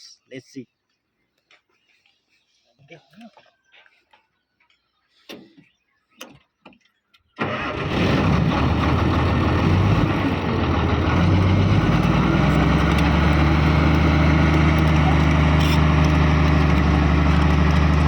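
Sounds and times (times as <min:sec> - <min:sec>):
bulldozer diesel engine idling: 0:07.4 - 0:18.0.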